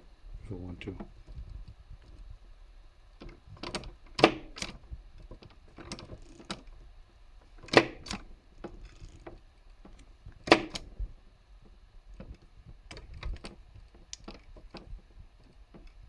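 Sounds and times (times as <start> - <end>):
typewriter mechanism clicks: 3.6 - 4.8, 7.6 - 8.2.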